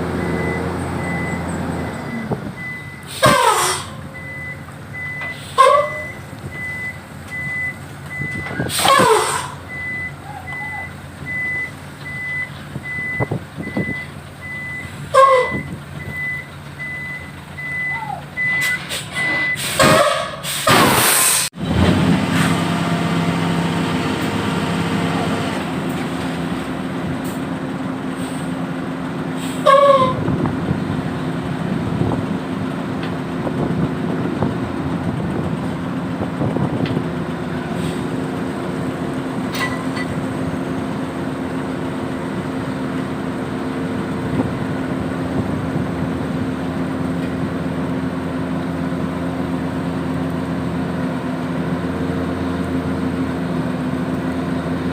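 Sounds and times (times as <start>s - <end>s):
truck reversing alarm beeps: 0.0s - 20.4s, 38.0s - 42.6s
diesel engine drone: 0.0s - 54.9s
air brake hisses: 8.6s - 9.6s, 18.7s - 21.5s, 28.1s - 28.6s, 29.4s - 29.9s.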